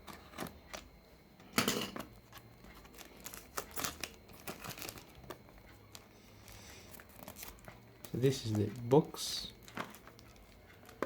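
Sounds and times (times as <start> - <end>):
plastic and cardboard crinkling: 2.1 - 11.0
packaging rustle: 2.2 - 11.0.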